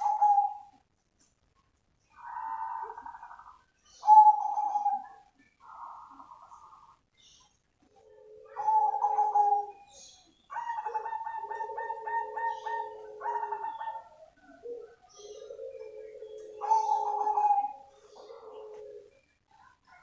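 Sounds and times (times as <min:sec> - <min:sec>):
dove cooing: 0:00.0 - 0:00.8, 0:02.1 - 0:07.0, 0:07.8 - 0:20.0.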